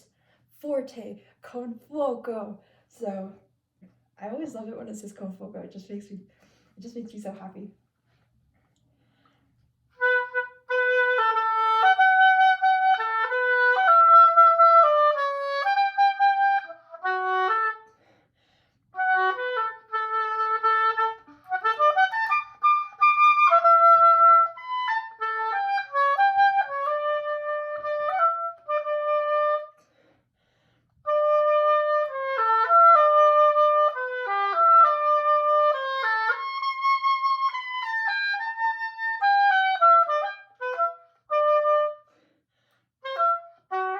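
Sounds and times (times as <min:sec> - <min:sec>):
solo oboe melody: 0:09.9 - 0:18.0, 0:19.0 - 0:29.9, 0:31.0 - 0:42.2, 0:43.0 - 0:43.9.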